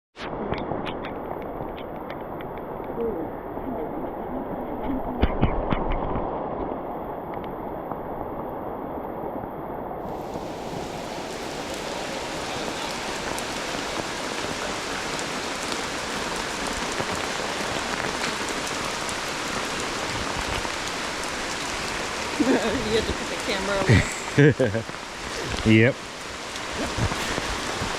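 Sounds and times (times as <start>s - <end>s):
steady rain falling: 0.5s - 27.9s.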